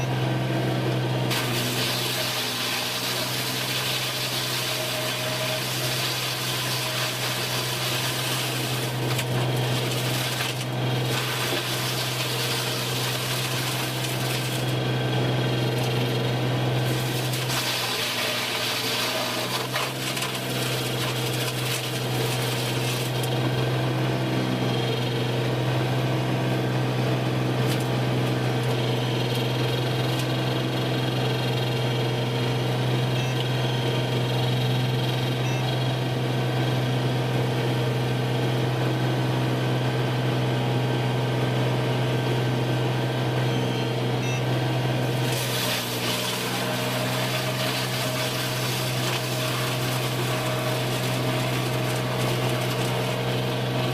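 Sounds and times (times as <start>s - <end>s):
wood-processing machinery humming: 0.0s - 53.9s.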